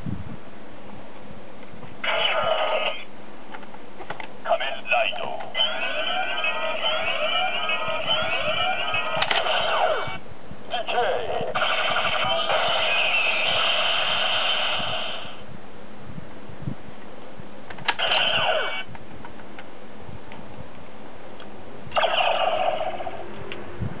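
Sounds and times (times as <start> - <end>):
toy belt electronic sound effects: 5.5 - 10.2, 11.6 - 15.3, 17.9 - 18.9.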